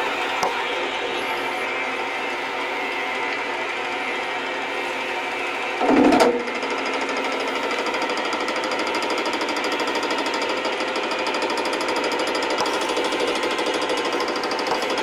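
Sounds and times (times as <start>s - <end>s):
metal lathe clattering: 5.8s - 15.0s.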